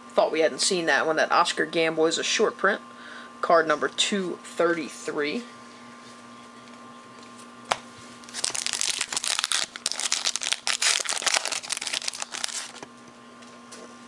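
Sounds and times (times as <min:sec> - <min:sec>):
foil wrapper crinkling: 0:08.2 - 0:12.8.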